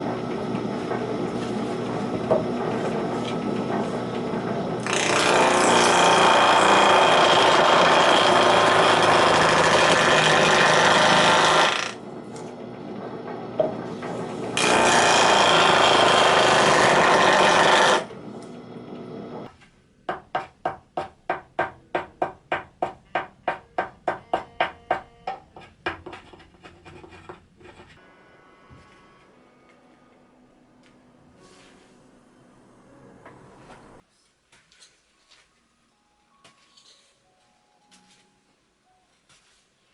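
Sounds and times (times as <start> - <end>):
hand tool rasping wood: 4.8 - 12.0, 14.6 - 18.1.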